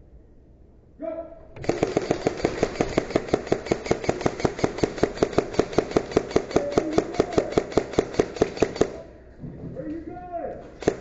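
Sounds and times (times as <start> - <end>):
airsoft gun firing: 1.6 - 9.1, 10.8 - 11.0.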